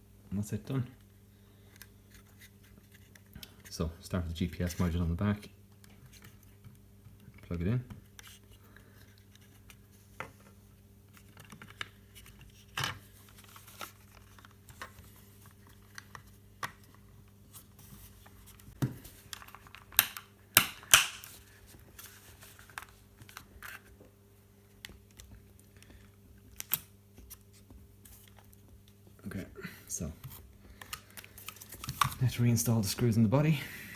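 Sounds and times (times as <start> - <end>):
plastic parts clicking and rustling: 11.1 - 17.3, 18.2 - 24.0, 30.2 - 32.4.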